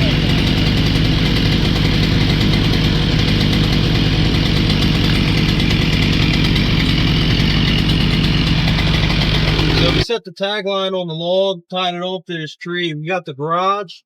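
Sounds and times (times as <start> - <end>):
motor engine running steadily: 0.0 - 10.0.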